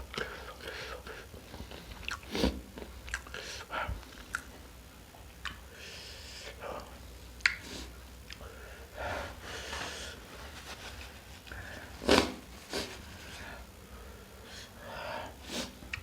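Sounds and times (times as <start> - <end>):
person sniffing and snorting: 2.2 - 2.6, 11.6 - 13.6, 15.4 - 15.8
person breathing hard through nose: 5.6 - 7.0, 7.7 - 10.5, 11.5 - 15.8.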